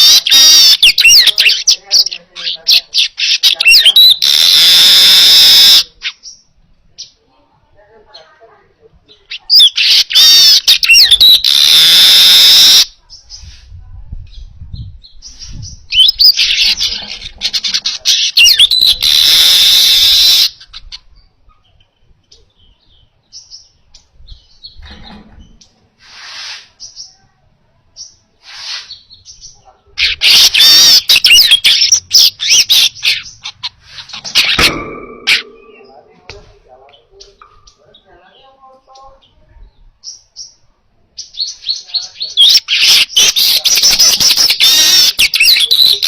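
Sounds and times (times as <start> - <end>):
bird buzzy chattering song: 0.0 - 7.2, 9.1 - 13.5, 14.3 - 27.2, 28.0 - 36.2, 36.9 - 46.0
short bird calls: 2.8 - 6.3.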